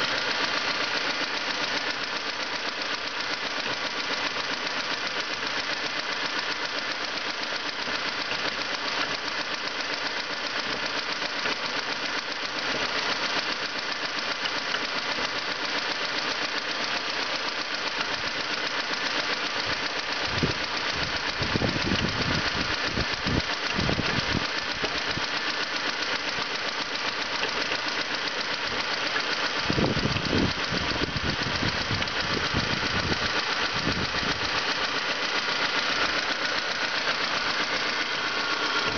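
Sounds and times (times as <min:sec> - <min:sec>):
car engine running: 0:00.0 - 0:38.9
weird engine noise: 0:19.6 - 0:38.9.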